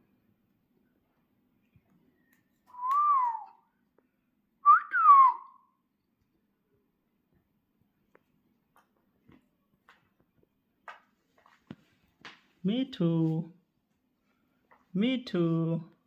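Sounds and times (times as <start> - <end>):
parrot whistling: 4.6 - 5.6.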